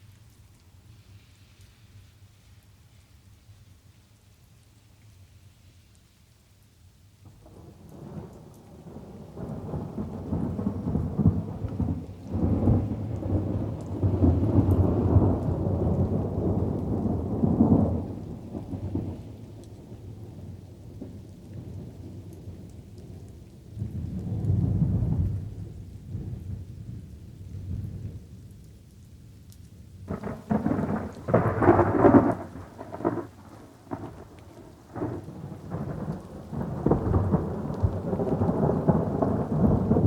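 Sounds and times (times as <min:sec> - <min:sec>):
soft rain: 0:00.0 - 0:40.0
thunder rumbling: 0:07.4 - 0:22.6, 0:23.7 - 0:28.3, 0:30.1 - 0:40.0.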